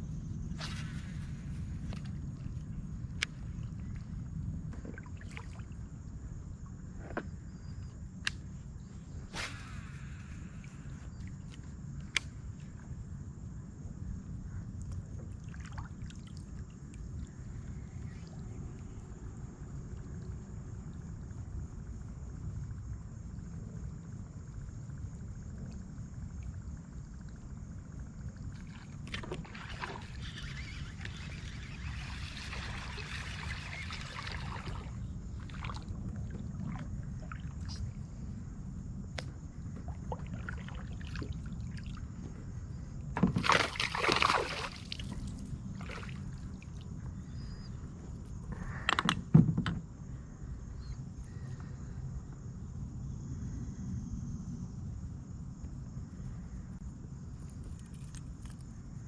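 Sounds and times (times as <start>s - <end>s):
water lapping around boat: 0.6s - 7.9s, 14.8s - 19.2s, 25.0s - 38.4s, 39.4s - 49.1s
water splashes: 28.6s - 37.7s, 43.3s - 46.8s.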